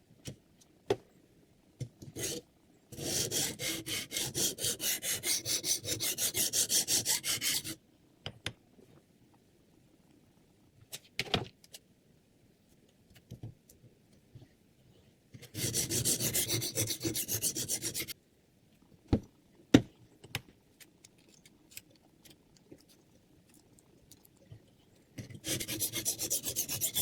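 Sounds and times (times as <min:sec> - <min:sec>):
sharpening stone rasping on blade: 0:15.5 - 0:18.1, 0:25.4 - 0:27.0.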